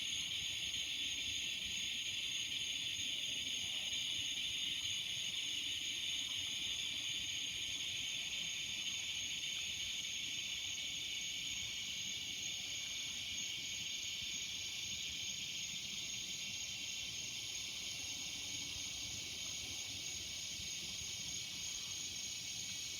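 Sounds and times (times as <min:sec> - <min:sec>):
cicadas buzzing: 0:08.9 - 0:22.9.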